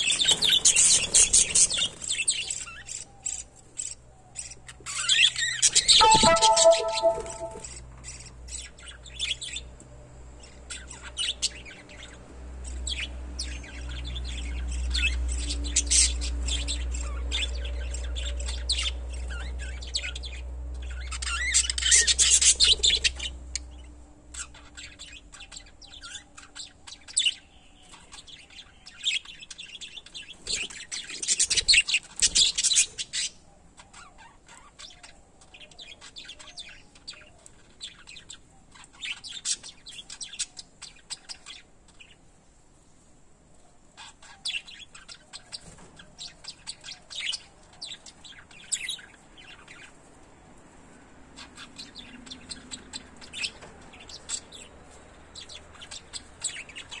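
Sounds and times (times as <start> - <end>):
parrots chirping and chattering: 51.2 - 57.0.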